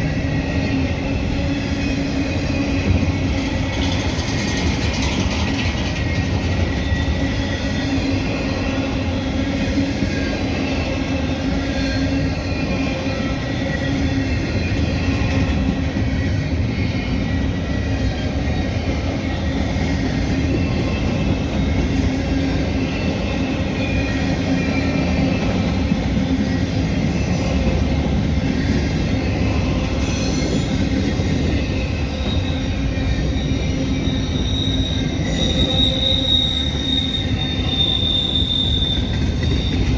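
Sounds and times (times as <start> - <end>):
train wheels rumbling on rail: 0.0 - 39.9
high wheel squeal: 19.2 - 39.9.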